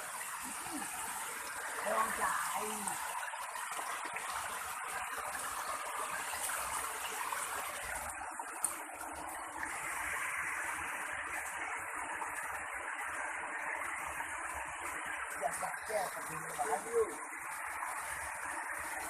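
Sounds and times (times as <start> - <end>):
waterfall rushing: 0.0 - 3.2.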